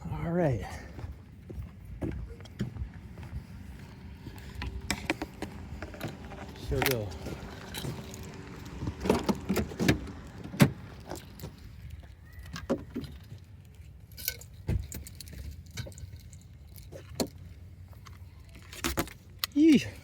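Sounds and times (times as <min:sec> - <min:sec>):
metal gear clinking and rattling: 0:05.2 - 0:08.8, 0:10.9 - 0:20.0.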